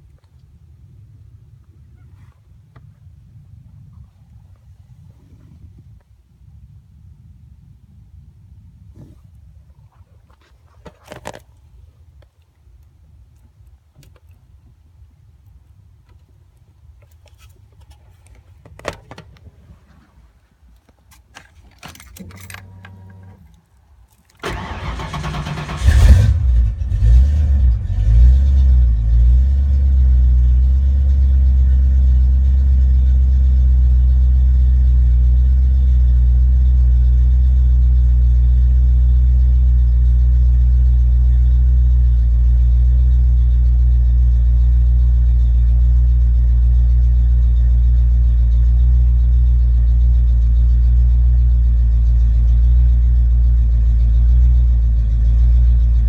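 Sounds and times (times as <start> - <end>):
car engine starting and idling: 21.2 - 56.0
ignition key clicks: 21.4 - 23.6
fuel pump humming: 24.4 - 26.0.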